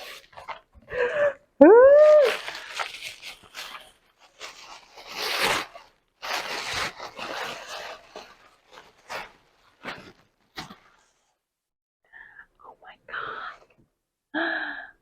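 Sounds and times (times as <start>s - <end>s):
packaging being torn and rustled: 2.1s - 10.7s.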